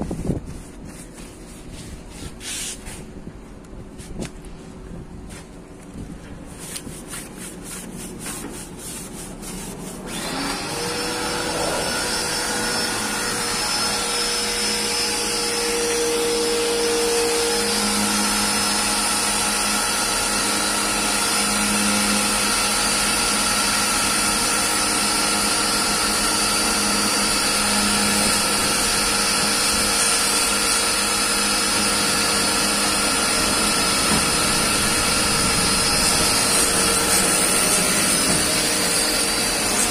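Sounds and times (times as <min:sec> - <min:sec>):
small electric machine running: 0:10.1 - 0:24.8.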